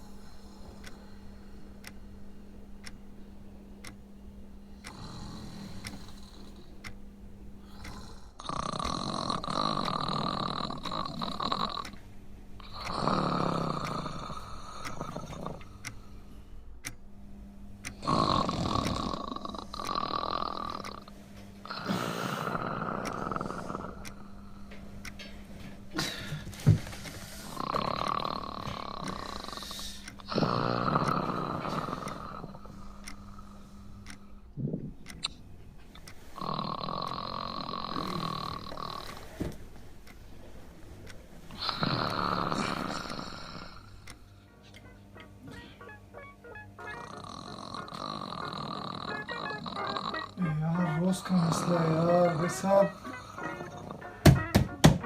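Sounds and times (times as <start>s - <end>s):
man snoring: 4.8s - 6.7s, 7.6s - 12.0s, 12.6s - 15.8s, 17.9s - 21.1s, 21.7s - 24.1s, 27.4s - 33.6s, 36.4s - 39.4s, 41.6s - 44.0s, 46.8s - 54.2s
man snorting: 21.7s - 24.0s, 26.0s - 32.6s, 36.4s - 39.5s, 41.6s - 44.0s, 46.8s - 50.4s.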